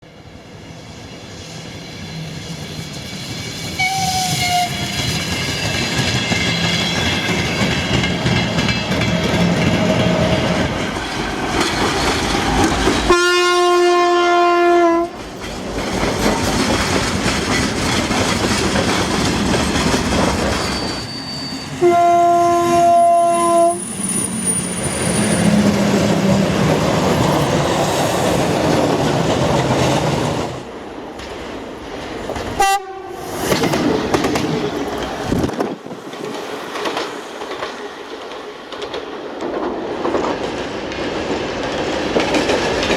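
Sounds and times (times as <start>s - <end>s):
vehicle horn: 13.1s - 15.1s, 21.8s - 23.8s, 32.6s - 33.2s.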